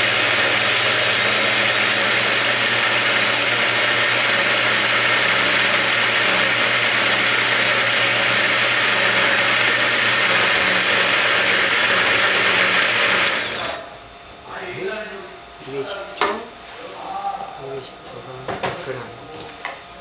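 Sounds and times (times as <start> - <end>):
electric blender running: 0.0 - 13.9.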